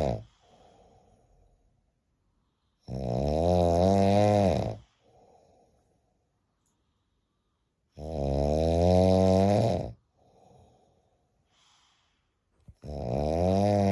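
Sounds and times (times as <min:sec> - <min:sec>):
person snoring loudly: 0:00.0 - 0:00.3, 0:02.9 - 0:04.9, 0:08.0 - 0:10.0, 0:12.8 - 0:13.9
faint breaths: 0:00.0 - 0:02.9, 0:04.6 - 0:08.0, 0:10.0 - 0:13.0.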